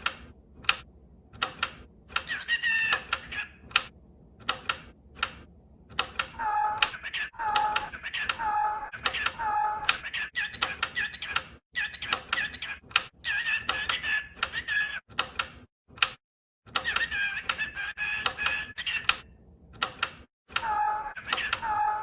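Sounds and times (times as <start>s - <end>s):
pet bird chattering and whistling: 2.1s - 3.7s, 6.4s - 15.1s, 16.8s - 19.4s, 20.6s - 22.0s.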